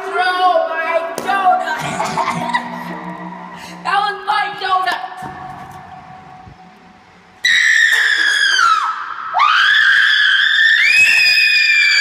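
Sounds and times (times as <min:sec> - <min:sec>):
high-pitched screams: 0:07.4 - 0:12.0.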